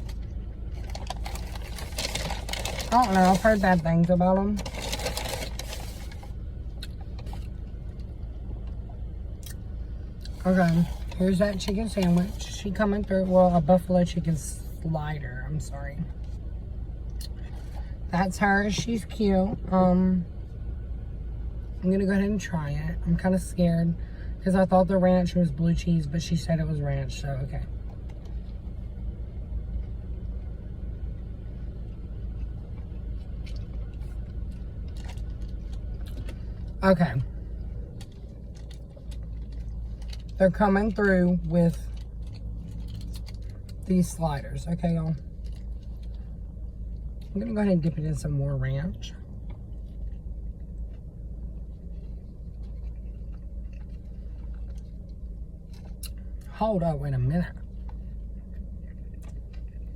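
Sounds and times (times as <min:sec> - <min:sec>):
car engine idling: 0:00.0 - 0:59.9
low rumble: 0:00.0 - 0:59.9
chewing and mouth sounds: 0:32.3 - 0:36.8, 0:49.3 - 0:56.4, 0:57.8 - 0:59.9.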